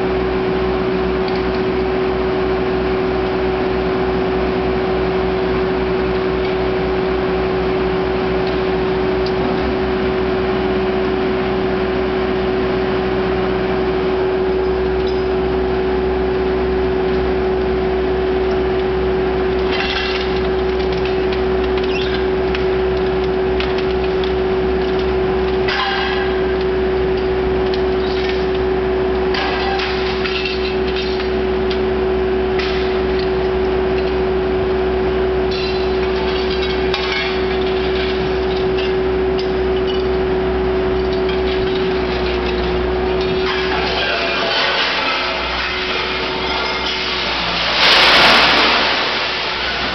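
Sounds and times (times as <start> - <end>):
metal scrap clanking and crunching: 19.6 - 34.3, 35.1 - 49.9.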